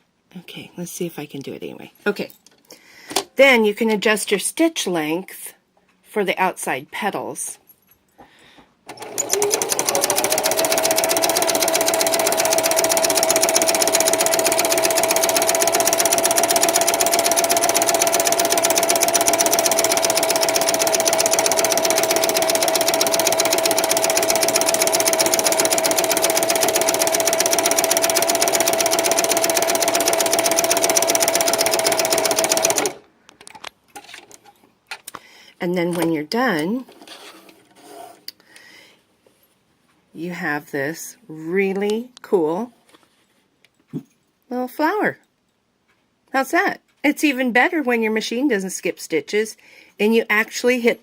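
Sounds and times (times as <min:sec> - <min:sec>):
sewing machine motor whine: 0:08.9 - 0:33.0
sewing needle clatter: 0:08.9 - 0:33.0.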